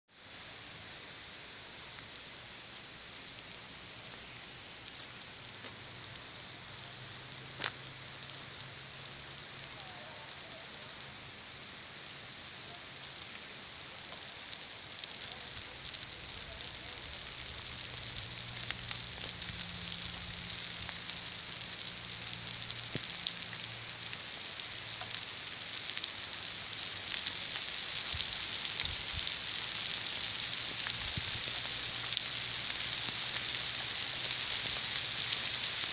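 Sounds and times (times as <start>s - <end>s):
rain falling: 0.2s - 35.9s.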